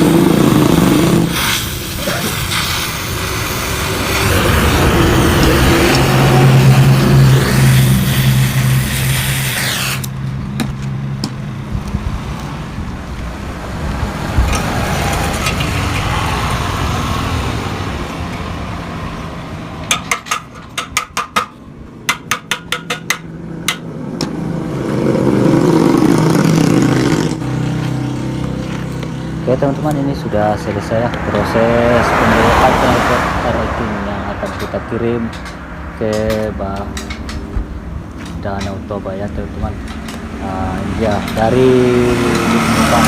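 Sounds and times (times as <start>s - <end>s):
two-stroke motorcycle engine revving: 0.0s - 10.4s, 24.3s - 32.7s, 39.4s - 43.0s
exhaust cracks: 0.0s - 43.0s.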